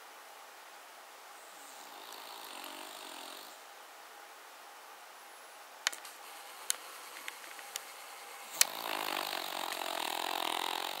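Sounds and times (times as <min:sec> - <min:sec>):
dog snoring: 0:01.4 - 0:03.6, 0:08.5 - 0:11.0.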